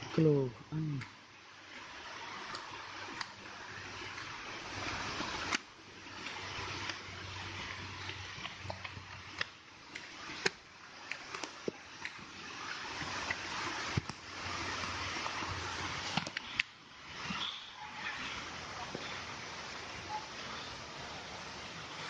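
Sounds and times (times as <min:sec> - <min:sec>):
stream water rushing: 0:00.0 - 0:22.0.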